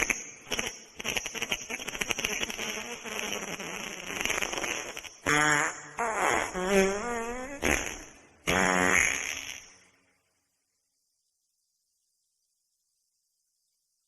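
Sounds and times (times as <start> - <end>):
wet fart sounds: 0.0 - 9.8.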